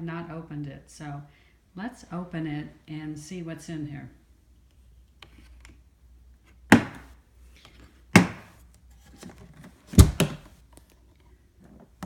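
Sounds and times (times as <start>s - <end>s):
sharp knocks on package: 6.7s - 7.1s, 8.2s - 8.5s.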